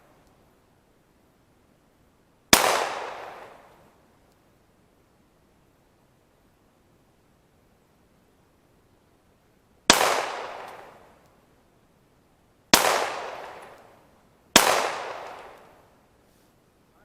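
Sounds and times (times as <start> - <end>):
pistol shots echoing: 2.5 - 3.7, 9.9 - 11.0, 12.7 - 13.8, 14.6 - 15.7.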